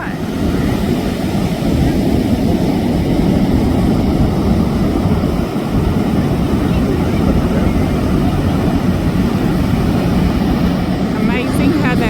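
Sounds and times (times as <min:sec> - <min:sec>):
aircraft engine rumble: 0:00.0 - 0:12.0.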